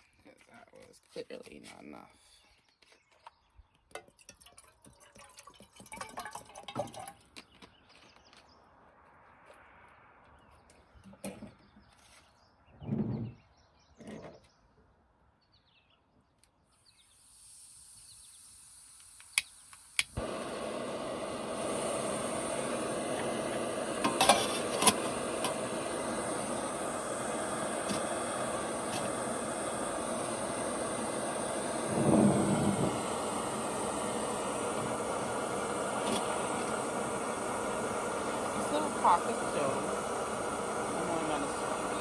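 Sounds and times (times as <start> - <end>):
stove burner rushing hiss: 16.8 - 42.0
gas hissing: 17.0 - 42.0
stove igniter clicks: 18.9 - 30.3.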